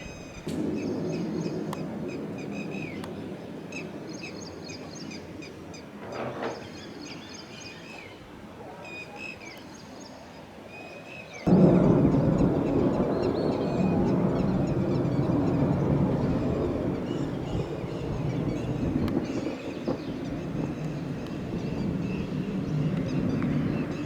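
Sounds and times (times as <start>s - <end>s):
low-flying jet roaring: 0.0s - 7.2s, 11.5s - 24.0s
birds chirping: 11.2s - 24.0s
faint low rumble: 11.5s - 24.0s.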